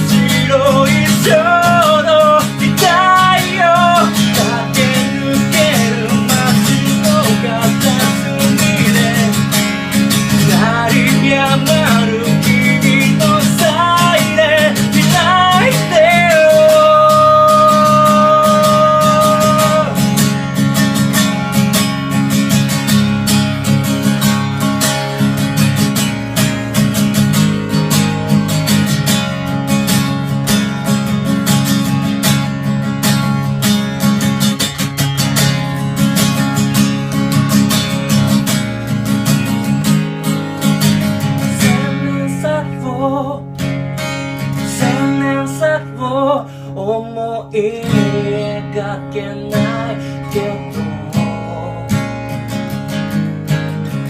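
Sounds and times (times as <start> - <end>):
person singing: 0.0 - 20.7, 41.4 - 43.7, 44.5 - 52.5
guitar strumming: 0.0 - 54.0.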